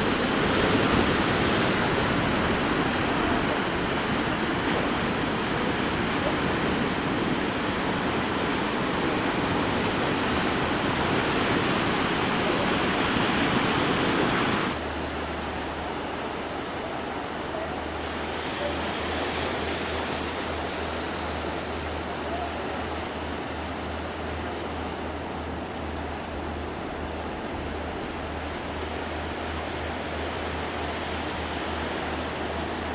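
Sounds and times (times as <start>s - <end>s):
wind on microphone: 0.0s - 14.8s
breaking waves rushing: 0.0s - 32.9s.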